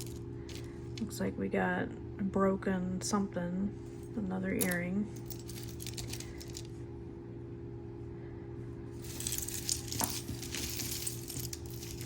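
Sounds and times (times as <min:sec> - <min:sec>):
small metal jewelry clinking: 0:00.0 - 0:00.7, 0:04.6 - 0:06.7, 0:09.0 - 0:12.0.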